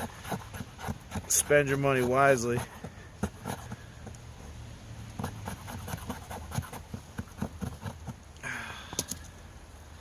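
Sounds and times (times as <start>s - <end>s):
rasping scrape: 0.0s - 4.2s, 5.2s - 8.2s.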